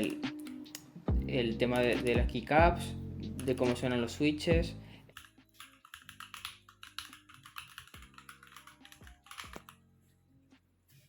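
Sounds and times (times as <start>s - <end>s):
faint background music: 0.0s - 11.0s
mechanical keyboard typing: 5.1s - 9.8s.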